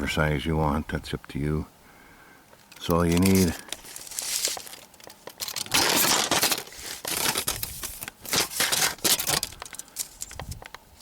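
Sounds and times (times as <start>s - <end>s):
rustling and scraping handling noise: 2.6s - 11.0s.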